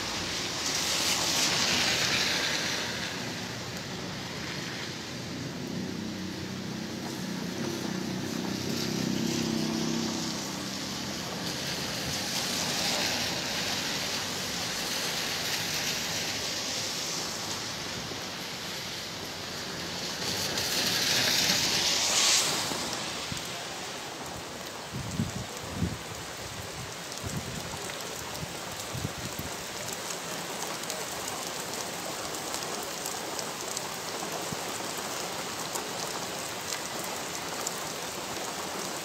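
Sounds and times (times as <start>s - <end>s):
heavy rain falling: 0.0s - 39.0s
vehicles passing on wet street: 0.0s - 39.0s.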